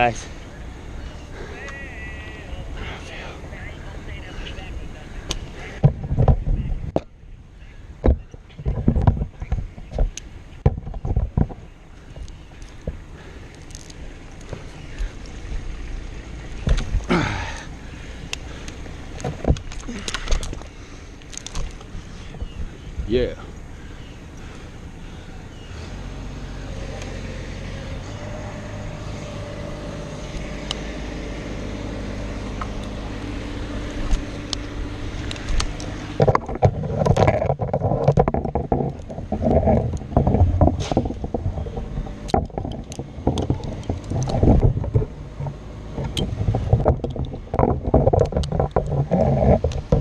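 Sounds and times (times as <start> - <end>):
low engine hum: 0.0 - 50.0
rustling and knocking: 5.8 - 7.1, 8.0 - 13.0, 19.2 - 20.7, 33.4 - 50.0.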